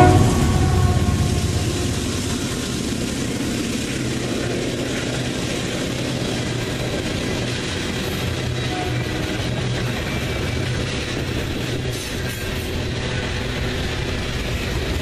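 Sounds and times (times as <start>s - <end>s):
low engine drone: 0.0s - 3.9s
train wheels rumbling on rail: 0.0s - 15.0s.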